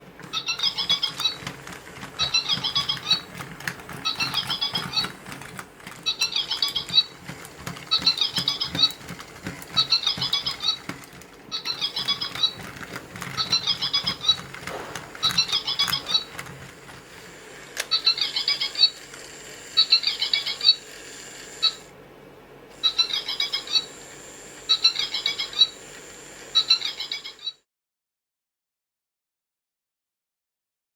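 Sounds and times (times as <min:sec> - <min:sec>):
toy warbling chirp: 0:00.2 - 0:01.6, 0:02.2 - 0:16.5, 0:17.8 - 0:21.9, 0:22.7 - 0:27.6.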